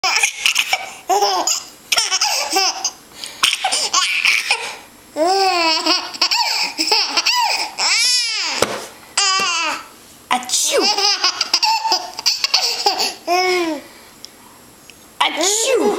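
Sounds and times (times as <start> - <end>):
baby laughing: 0.0 - 8.6, 9.2 - 9.9, 10.7 - 13.8.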